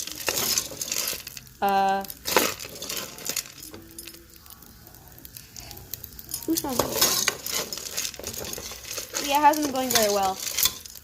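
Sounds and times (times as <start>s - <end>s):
metal spoon clinking against pot: 0.0s - 1.4s, 2.1s - 4.2s, 6.3s - 11.0s.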